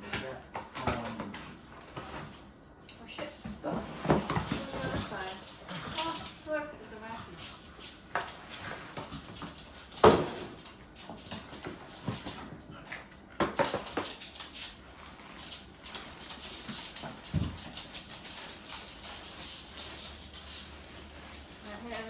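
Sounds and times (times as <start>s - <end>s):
packaging rustling: 14.8s - 22.0s.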